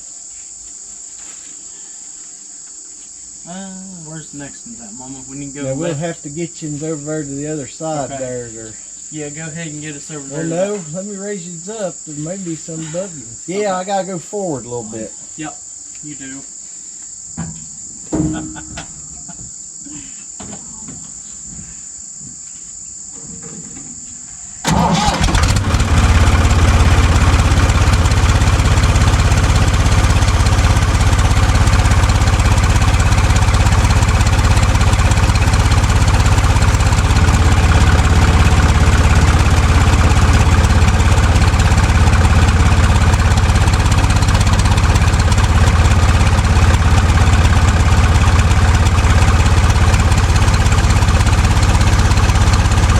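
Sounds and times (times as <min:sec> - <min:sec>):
crickets trilling: 0:00.0 - 0:48.6
backhoe engine running: 0:24.6 - 0:52.9.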